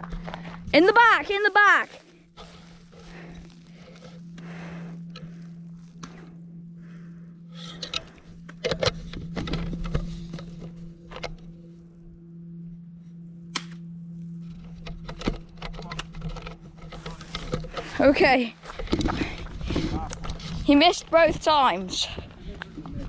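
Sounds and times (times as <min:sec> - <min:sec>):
steady low hum: 0:00.0 - 0:23.0
spring gun shot pops: 0:13.5 - 0:13.8.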